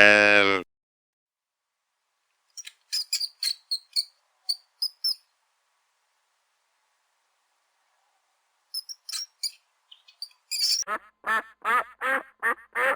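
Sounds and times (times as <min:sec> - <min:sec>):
deep animal call: 0:00.0 - 0:00.6
small animal squeaks: 0:02.6 - 0:05.2, 0:08.7 - 0:10.9.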